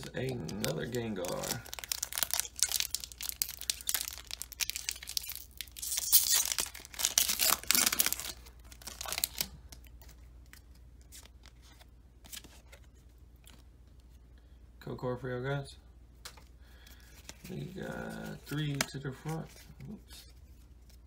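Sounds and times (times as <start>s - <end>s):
foil wrapper tearing and crinkling: 0.0s - 9.9s.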